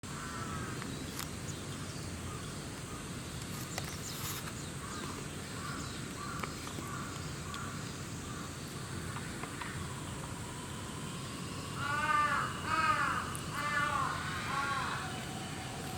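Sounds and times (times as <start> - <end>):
outdoor background noise: 0.0 - 15.9
crows cawing: 0.1 - 0.8, 4.8 - 9.8, 11.7 - 15.4.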